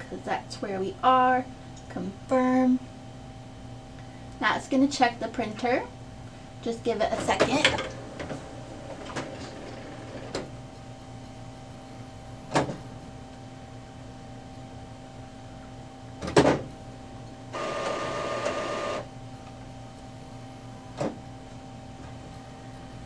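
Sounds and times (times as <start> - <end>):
printer motor whirring: 17.5 - 19.1.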